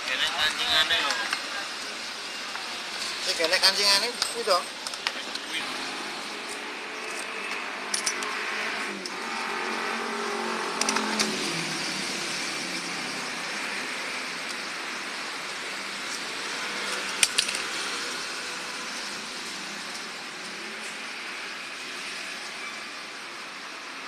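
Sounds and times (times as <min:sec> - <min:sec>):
road traffic noise: 0:00.0 - 0:24.0
vehicle engine passing: 0:05.5 - 0:14.4.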